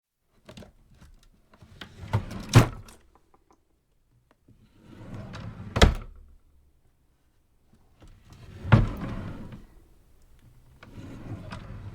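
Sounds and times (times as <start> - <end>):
drawer sliding and rattling: 1.9 - 3.0, 4.8 - 6.2, 8.1 - 9.8, 10.8 - 11.9
drawer knocking shut: 5.8 - 6.2.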